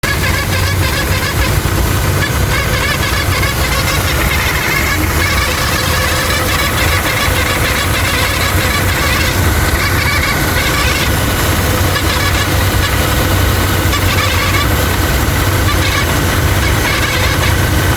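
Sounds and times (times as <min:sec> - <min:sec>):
car engine idling: 0:00.0 - 0:17.9
high-pitched pulley whine: 0:00.0 - 0:17.9.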